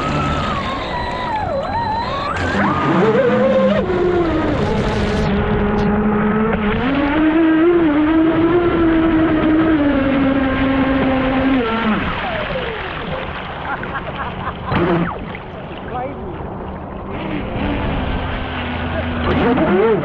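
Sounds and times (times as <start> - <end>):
electric motor whining: 0.0 - 12.6.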